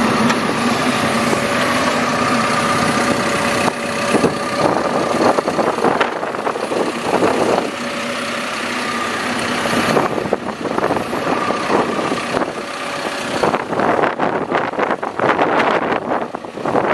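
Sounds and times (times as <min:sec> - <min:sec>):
diesel engine running: 0:00.0 - 0:16.9.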